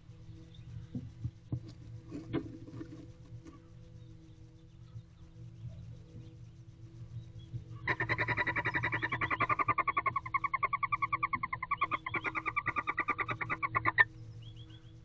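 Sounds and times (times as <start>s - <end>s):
low steady hum: 0.0s - 15.0s
animal trilling call: 7.8s - 14.1s.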